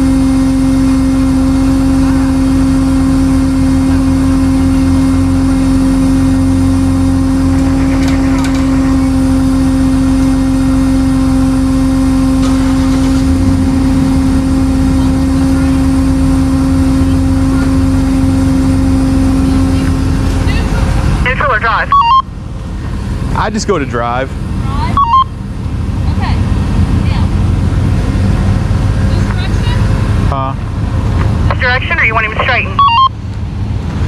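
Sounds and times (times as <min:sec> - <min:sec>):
vehicle engine running steadily: 0:00.0 - 0:34.0.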